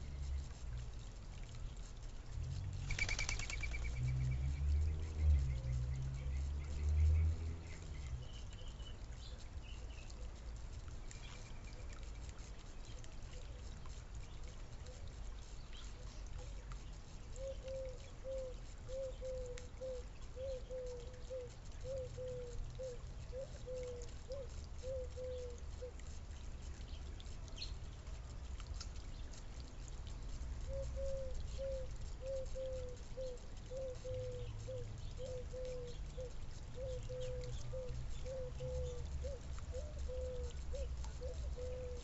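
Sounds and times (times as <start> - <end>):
faint high chirps: 2.9 - 4.4.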